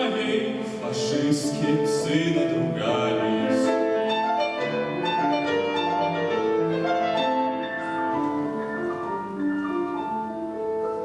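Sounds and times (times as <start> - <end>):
person singing: 0.0 - 4.1
piano playing: 0.0 - 11.0.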